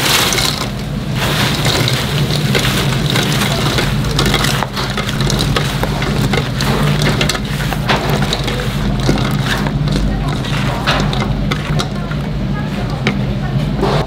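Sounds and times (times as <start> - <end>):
crackling sizzle of frying: 0.0 - 13.8
kitchen clicks and clatters: 0.0 - 14.0
steady low hum: 0.0 - 14.0.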